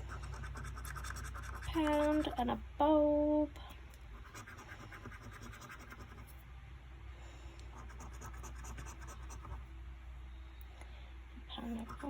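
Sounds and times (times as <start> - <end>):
scratch card scraping: 0.1 - 2.3, 4.2 - 6.4, 7.8 - 9.6.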